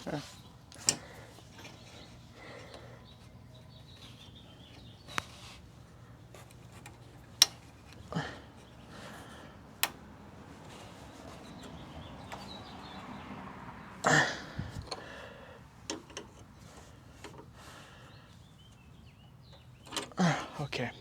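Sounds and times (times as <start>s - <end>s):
sharp clicks of fasteners: 9.8s - 10.0s.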